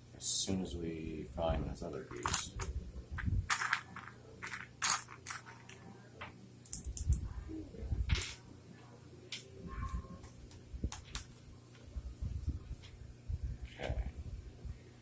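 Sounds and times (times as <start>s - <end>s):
plastic bricks clicking and rattling: 2.1s - 2.7s, 3.5s - 5.8s.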